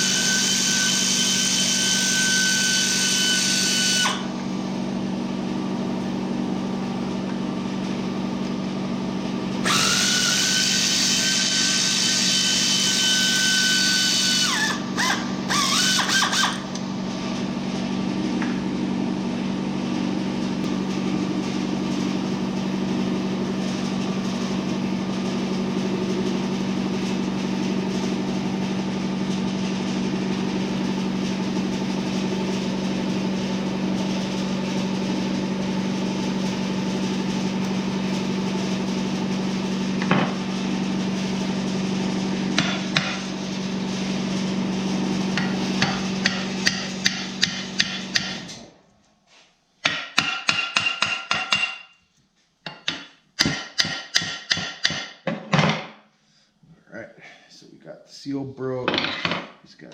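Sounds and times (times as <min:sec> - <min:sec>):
air compressor humming: 0:00.0 - 0:48.7
hammer tapping metal: 0:45.4 - 0:48.4, 0:49.8 - 0:51.9, 0:52.7 - 0:55.2.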